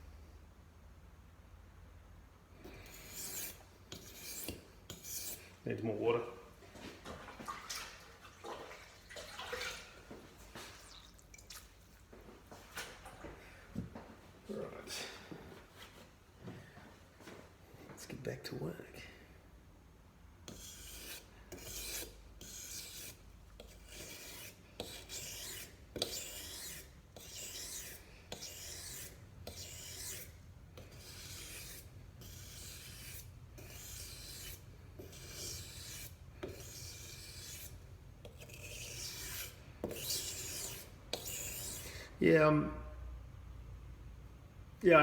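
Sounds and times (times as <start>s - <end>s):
knife rasping on sharpening stone: 2.7s - 5.4s, 20.5s - 42.0s.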